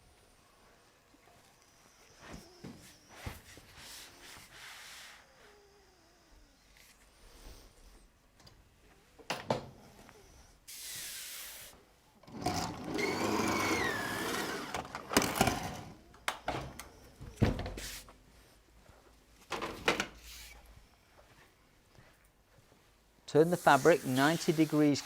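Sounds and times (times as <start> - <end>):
fabric unrolling whirring: 12.3 - 15.8.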